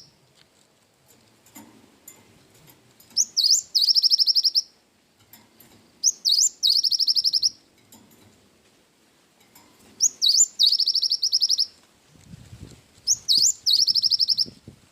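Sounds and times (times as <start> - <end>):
bird singing trills: 3.1 - 4.8, 6.0 - 7.6, 10.0 - 11.8, 13.1 - 14.6.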